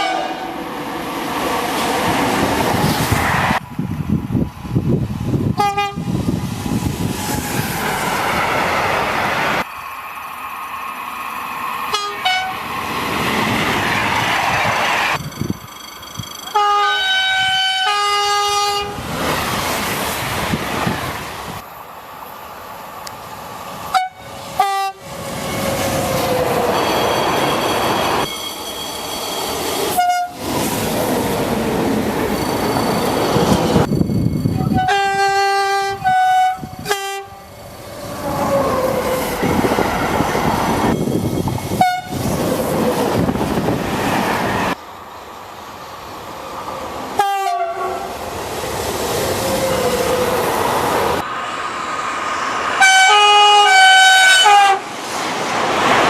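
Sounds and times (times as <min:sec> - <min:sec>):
two-tone train horn blasts: 0:00.0 - 0:00.6, 0:05.6 - 0:06.1, 0:11.9 - 0:12.6, 0:16.5 - 0:19.0, 0:23.9 - 0:25.1, 0:29.9 - 0:30.4, 0:34.6 - 0:37.5, 0:41.8 - 0:42.2, 0:47.2 - 0:48.1, 0:52.8 - 0:54.9
trains passing at speed: 0:00.0 - 0:56.0.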